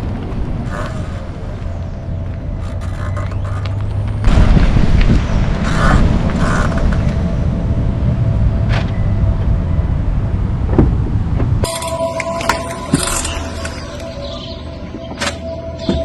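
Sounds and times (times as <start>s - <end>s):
low road rumble: 0.0s - 16.0s
wheel creaks: 2.6s - 4.2s
music: 11.6s - 16.0s.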